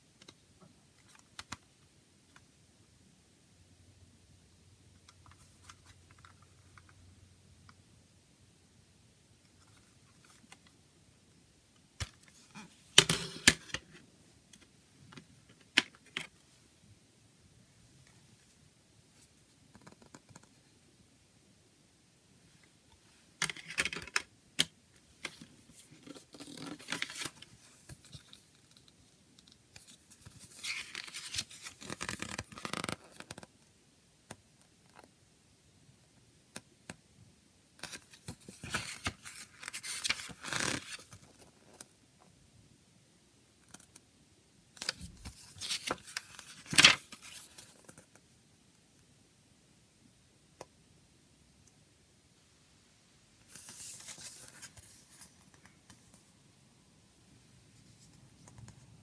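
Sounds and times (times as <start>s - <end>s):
cd packaging scraping and rustling: 25.3s - 28.4s, 29.8s - 33.0s, 37.9s - 41.2s, 44.8s - 47.7s.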